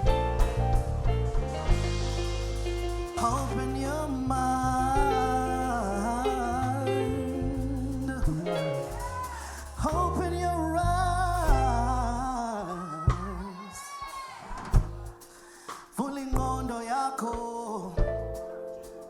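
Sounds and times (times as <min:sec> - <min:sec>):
drum hits: 0:00.0 - 0:06.0
bass notes: 0:00.0 - 0:13.5, 0:14.7 - 0:15.3, 0:16.4 - 0:16.8, 0:18.0 - 0:18.6
person singing long notes: 0:03.2 - 0:13.9.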